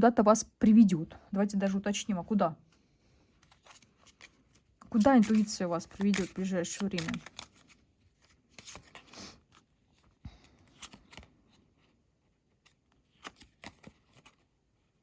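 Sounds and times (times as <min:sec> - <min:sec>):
cards being shuffled: 0:03.4 - 0:11.6, 0:12.6 - 0:14.5.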